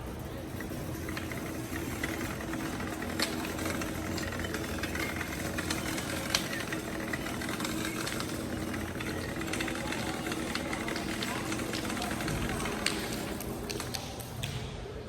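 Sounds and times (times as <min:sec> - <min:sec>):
engine hum: 0:00.0 - 0:14.0
sharp clicks: 0:03.0 - 0:14.6.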